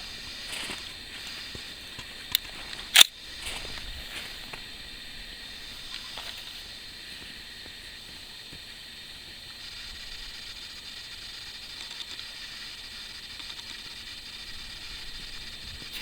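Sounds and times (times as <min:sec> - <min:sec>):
steady high hiss: 0:00.0 - 0:16.0
sharp clicks: 0:02.2 - 0:03.2, 0:13.3 - 0:13.8.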